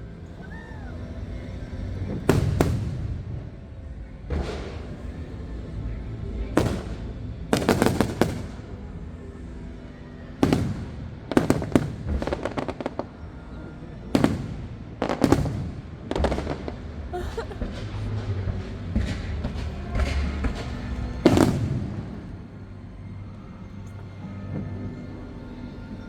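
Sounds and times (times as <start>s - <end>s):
music playing: 0.0s - 26.0s
fireworks crackling: 1.6s - 3.6s, 4.3s - 9.6s, 10.3s - 22.8s
fireworks booming: 2.0s - 3.6s, 4.3s - 5.8s, 6.4s - 8.8s, 10.4s - 13.3s, 14.1s - 22.6s.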